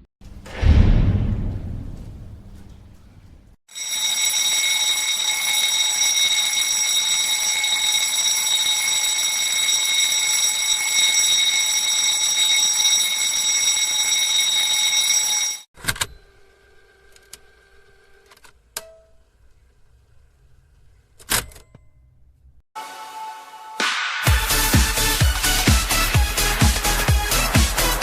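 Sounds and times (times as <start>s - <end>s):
fire alarm ringing: 3.7s - 15.7s.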